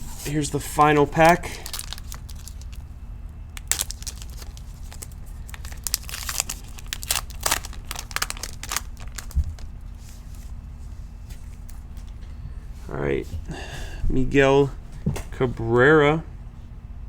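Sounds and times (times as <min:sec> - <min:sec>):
low room hum: 0:00.0 - 0:17.0
plastic wrapper tearing and crinkling: 0:00.8 - 0:02.9, 0:03.6 - 0:09.8.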